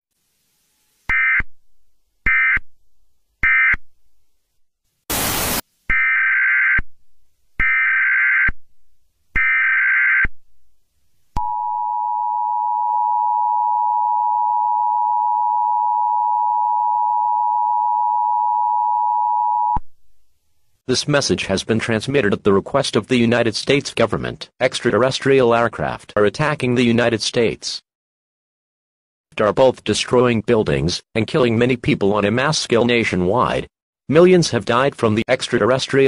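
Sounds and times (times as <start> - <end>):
burst of static: 5.1 - 5.7.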